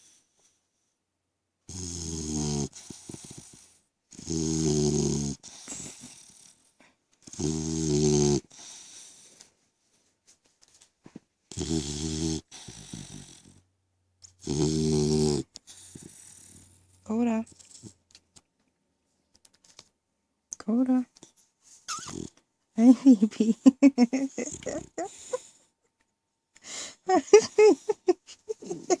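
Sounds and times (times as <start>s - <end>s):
puppy snoring: 1.7s - 9.4s, 11.5s - 18.0s, 21.9s - 22.4s, 24.4s - 25.6s
soft puppy breaths: 5.4s - 6.9s, 15.6s - 18.1s.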